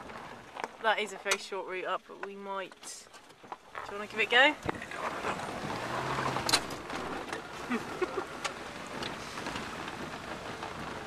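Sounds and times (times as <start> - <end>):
tyres rumbling on gravel: 0.0 - 11.0
low engine hum: 3.3 - 11.0.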